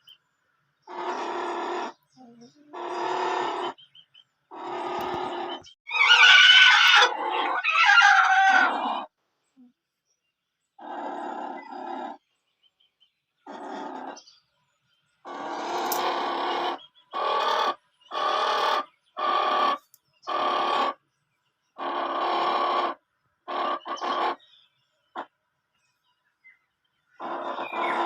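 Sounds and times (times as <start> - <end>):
chicken calling harshly: 0.9 - 2.0, 2.7 - 3.8, 4.5 - 9.1, 15.2 - 21.0, 21.8 - 24.4, 27.2 - 28.0.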